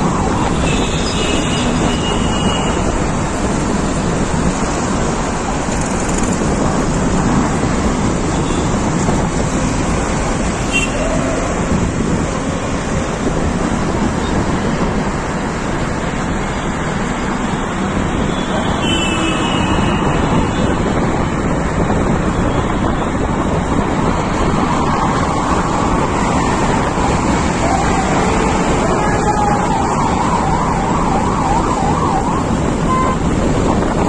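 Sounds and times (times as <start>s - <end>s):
road traffic: 0.0s - 34.0s.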